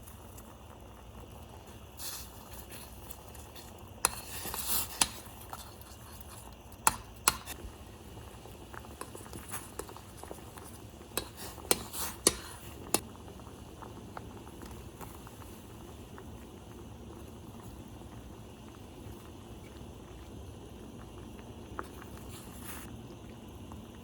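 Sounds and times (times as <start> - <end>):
utensils scraping cookware: 11.2 - 13.0.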